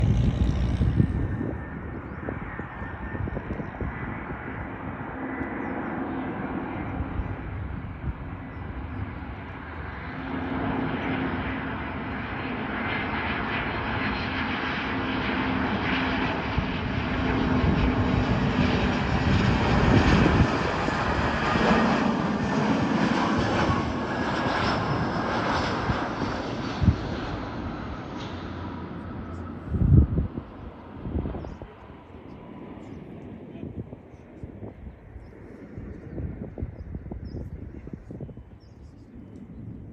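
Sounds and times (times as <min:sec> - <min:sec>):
jet engines rushing: 0:00.0 - 0:39.9.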